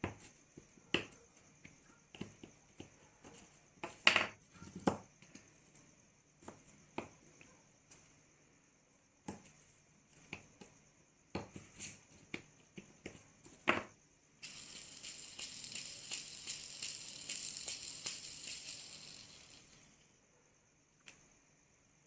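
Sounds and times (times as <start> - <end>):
metal parts clicking and knocking: 14.4 - 19.9
high fine rattling hiss: 14.4 - 20.2.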